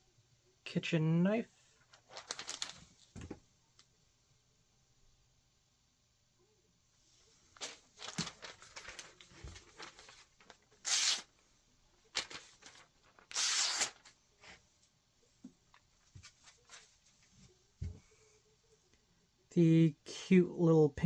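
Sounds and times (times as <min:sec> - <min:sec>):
knife slicing paper: 0:10.8 - 0:11.3, 0:12.2 - 0:14.1.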